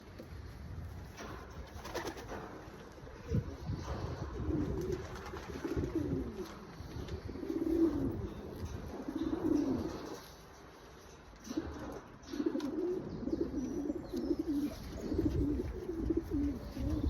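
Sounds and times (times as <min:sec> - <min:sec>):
pigeon cooing: 0:03.3 - 0:10.3, 0:11.5 - 0:17.0.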